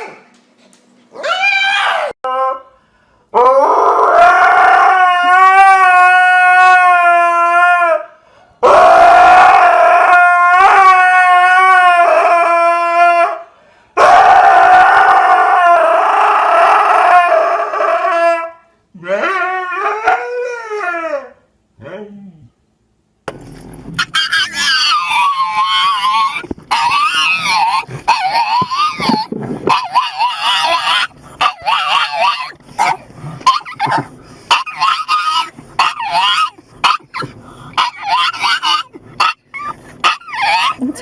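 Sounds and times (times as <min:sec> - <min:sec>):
dog howling: 0:01.2 - 0:02.7, 0:03.4 - 0:13.4, 0:14.0 - 0:22.4, 0:24.0 - 0:40.8
dog breathing: 0:37.2 - 0:37.9.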